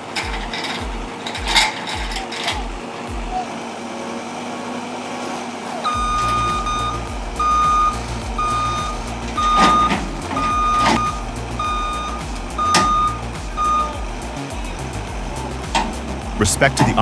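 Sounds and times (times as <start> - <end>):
reversing alarm beeping: 5.8 - 14.0
low engine rumble: 6.0 - 17.0.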